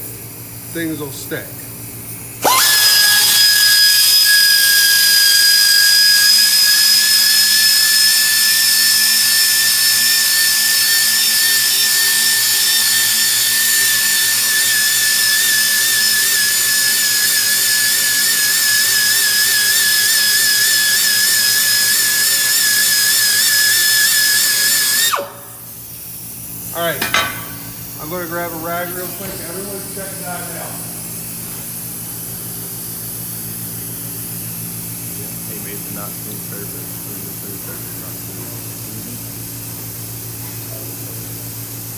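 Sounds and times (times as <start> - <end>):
tire buffer whining: 2.4 - 25.7.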